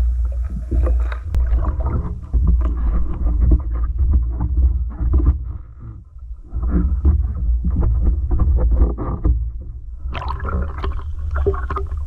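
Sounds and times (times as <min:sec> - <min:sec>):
muffled underwater water churning: 0:00.0 - 0:12.0
crackles and knocks on housing: 0:02.0 - 0:06.0, 0:06.6 - 0:09.9.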